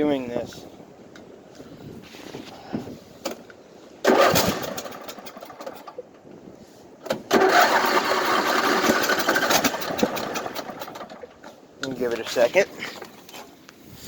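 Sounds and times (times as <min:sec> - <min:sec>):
starter cranking mower engine: 0:04.0 - 0:06.0, 0:07.1 - 0:11.6.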